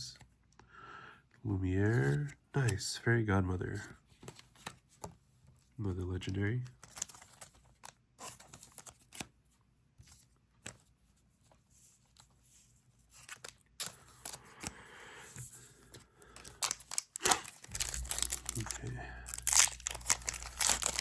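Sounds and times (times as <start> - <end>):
foil wrapper crinkling: 16.2 - 21.0.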